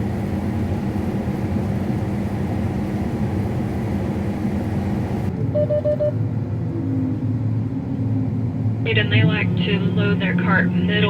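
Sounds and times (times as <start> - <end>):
engine hum: 0.0 - 11.0
heavy machinery engine running: 0.0 - 11.0
short beeps: 5.5 - 6.2.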